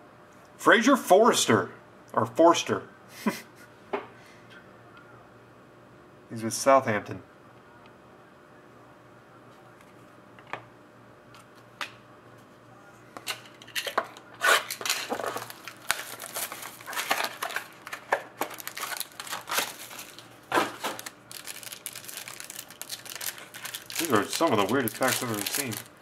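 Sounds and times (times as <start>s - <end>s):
card pack wrapper tearing and crinkling: 13.3s - 26.0s.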